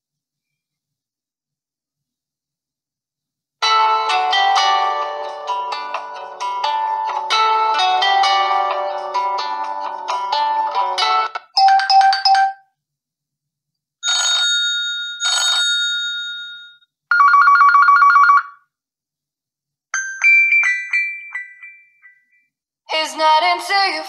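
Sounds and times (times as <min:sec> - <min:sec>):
fast trilling phone ring: 0:14.1 - 0:18.6.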